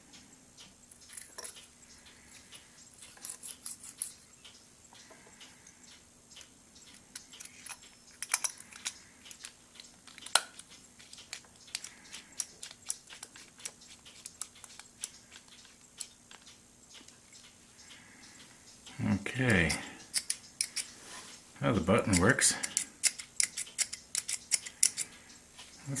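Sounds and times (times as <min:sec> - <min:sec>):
pen parts clicking: 0:22.6 - 0:25.0.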